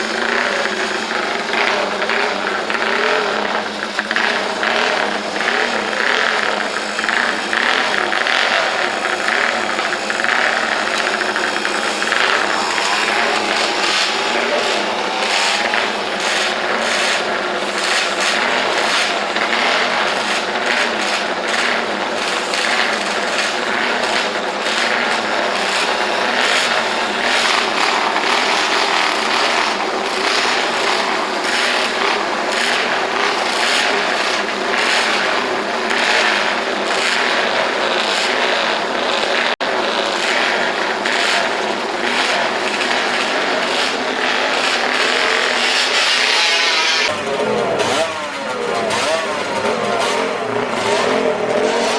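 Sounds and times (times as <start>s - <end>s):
motorcycle engines revving: 0.0s - 51.9s.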